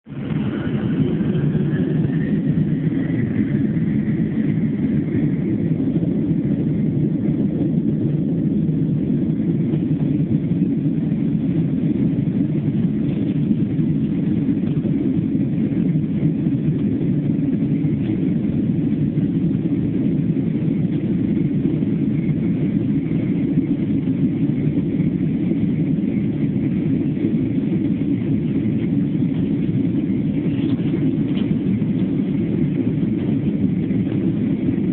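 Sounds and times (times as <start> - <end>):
jet engine roar in cabin: 0.0 - 34.9.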